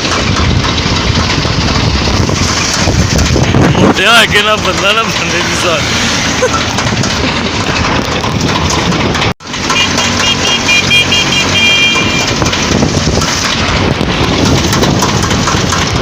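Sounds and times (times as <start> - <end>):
road rumble and wind noise: 0.0 - 16.0
vehicle horn tooting: 9.6 - 12.5.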